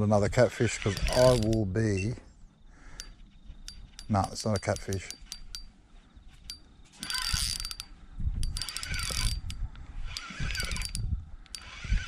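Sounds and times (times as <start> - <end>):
fishing reel clicking: 0.5 - 1.7, 3.0 - 5.7, 6.4 - 12.0.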